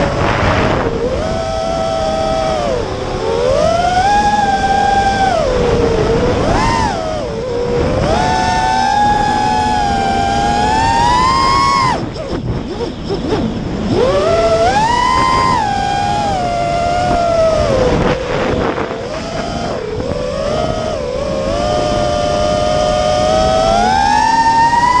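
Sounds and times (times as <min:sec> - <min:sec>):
drone propellers whining: 0:00.0 - 0:25.0
wind rush: 0:00.0 - 0:25.0.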